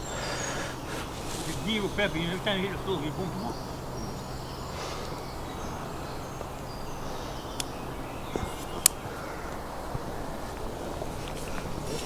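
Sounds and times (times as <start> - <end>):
outdoor background noise: 0.0 - 12.0
sharp clicks: 8.8 - 9.0.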